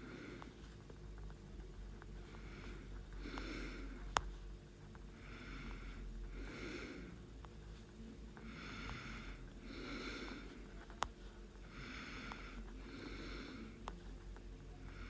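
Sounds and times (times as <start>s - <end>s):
person breathing through nose: 2.2s - 4.2s, 5.1s - 7.2s, 8.4s - 13.9s.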